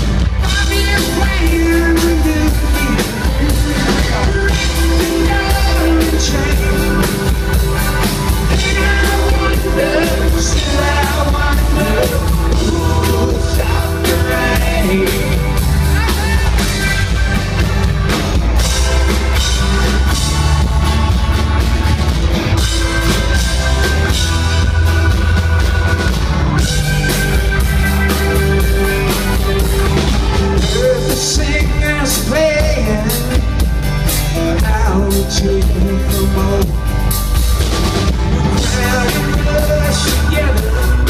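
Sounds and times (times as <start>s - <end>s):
drum kit beat: 0.0s - 41.0s
electric guitars: 0.0s - 41.0s
person singing: 0.2s - 20.1s, 27.9s - 37.2s, 38.1s - 41.0s.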